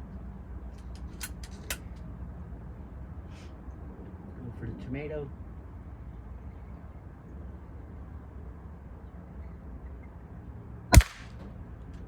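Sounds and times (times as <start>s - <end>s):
air rifle shot: 10.9s - 11.5s.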